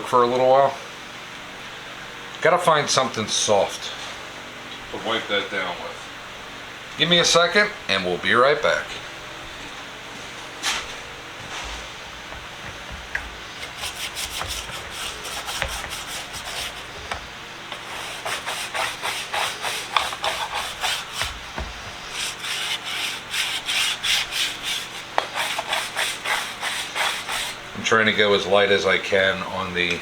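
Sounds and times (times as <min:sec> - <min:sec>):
scrubbing metal tin in water: 0:11.5 - 0:17.2, 0:17.8 - 0:21.4.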